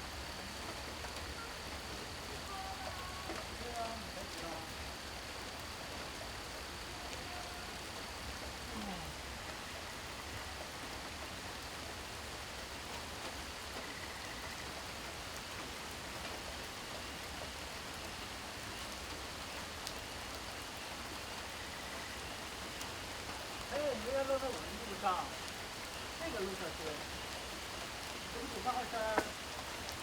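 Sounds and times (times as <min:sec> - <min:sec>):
steady rain falling: 0:00.0 - 0:30.0.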